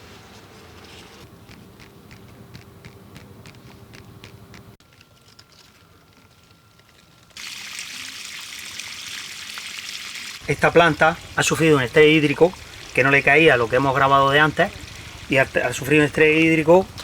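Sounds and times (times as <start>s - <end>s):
water running hiss: 7.4s - 17.0s.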